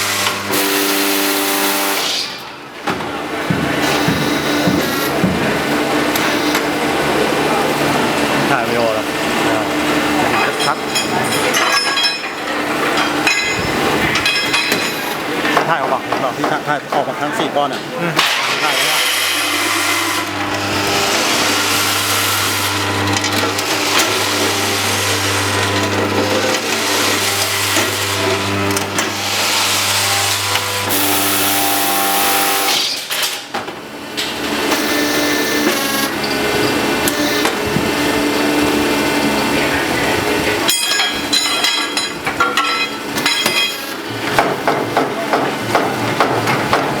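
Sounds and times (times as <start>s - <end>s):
motor hum: 18.0s - 32.9s.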